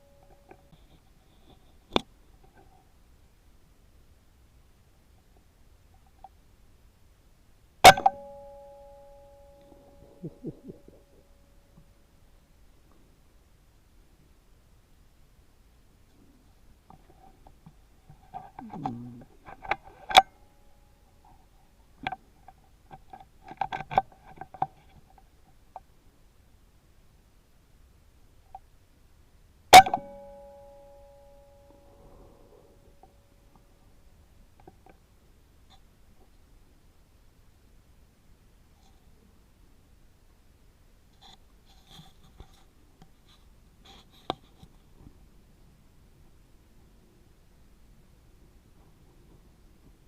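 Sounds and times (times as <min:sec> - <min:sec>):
faint scratching and rustling: 0:00.0 - 0:03.1, 0:16.0 - 0:25.9, 0:38.6 - 0:39.5, 0:41.0 - 0:47.3
faint steady tone: 0:00.0 - 0:50.0.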